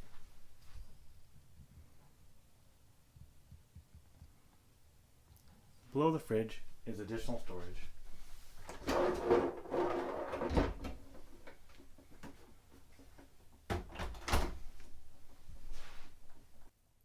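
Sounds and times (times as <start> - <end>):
cabinet doors opening and closing: 8.6 - 12.4, 13.2 - 15.1.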